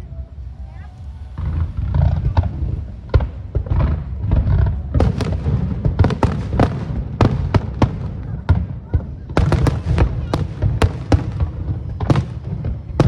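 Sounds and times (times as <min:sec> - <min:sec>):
low rumble: 0:00.0 - 0:07.3
fireworks bangs and cracks: 0:01.2 - 0:13.0.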